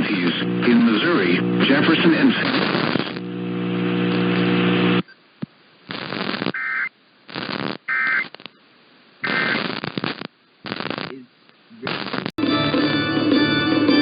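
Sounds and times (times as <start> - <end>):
radio static: 0.0 - 5.0, 5.9 - 8.6, 9.2 - 12.4.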